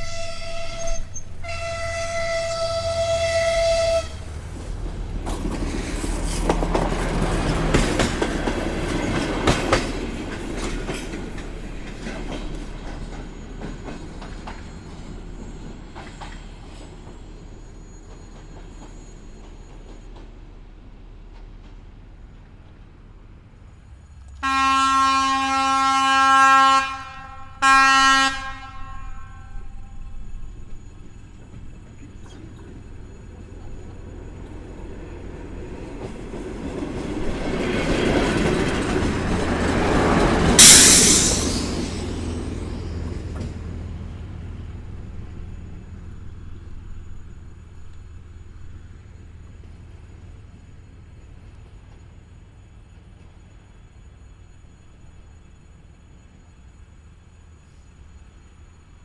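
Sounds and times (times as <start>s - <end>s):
railcar air horn blasts: 0.0s - 4.3s, 24.4s - 30.2s, 40.6s - 42.0s
railcar rumble and wheel noise: 0.0s - 59.0s.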